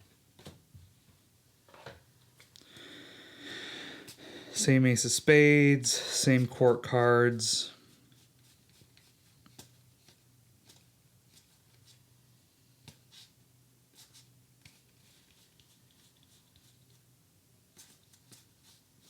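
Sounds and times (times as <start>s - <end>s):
playing cards clicking and rustling: 8.2s - 12.0s.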